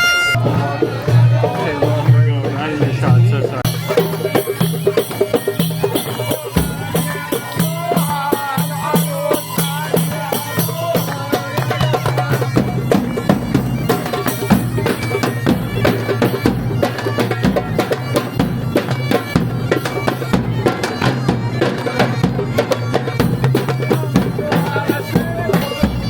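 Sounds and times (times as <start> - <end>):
bagpipes playing melody: 0.0 - 8.2, 11.3 - 26.0
regular drum beat: 0.5 - 5.0.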